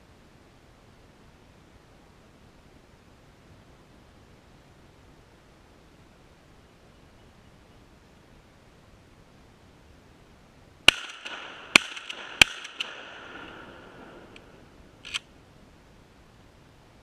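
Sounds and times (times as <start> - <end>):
shotgun shots with echo: 10.9 - 14.6.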